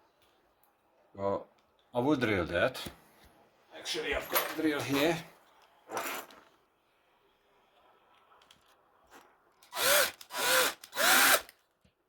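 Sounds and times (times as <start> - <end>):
electric drill spinning: 9.6 - 11.6.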